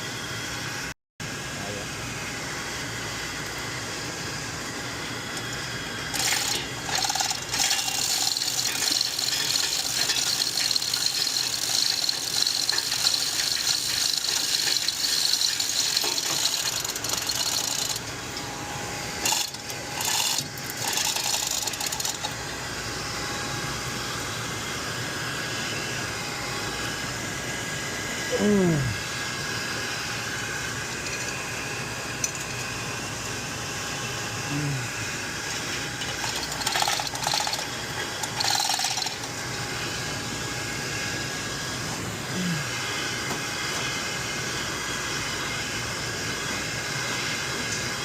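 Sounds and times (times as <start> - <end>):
ratchet clicking and metal rattling: 6.1 - 18.1, 19.2 - 22.4, 35.5 - 39.3.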